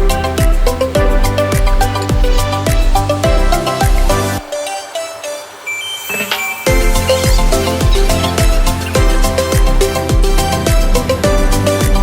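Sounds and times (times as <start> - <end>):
synth melody: 0.0 - 10.1
electronic dance music: 0.0 - 10.8
punchy kick drum beat: 6.7 - 12.0.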